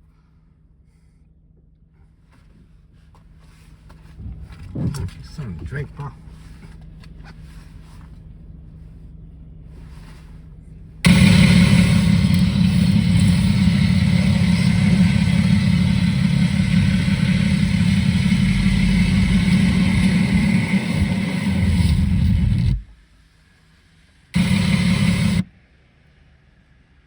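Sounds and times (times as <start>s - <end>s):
faint low hum: 0.0s - 25.6s
car interior engine and road rumble: 3.6s - 23.0s, 24.4s - 25.5s.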